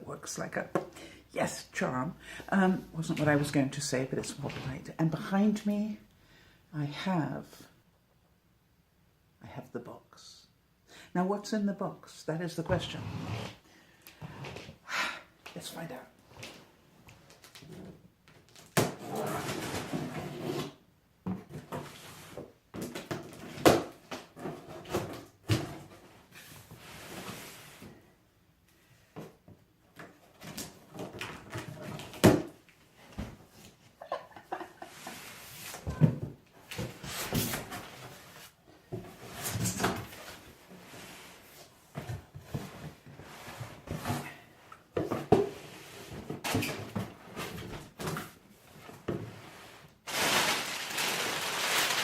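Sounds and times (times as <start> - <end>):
packing paper crinkling: 50.1 - 52.0.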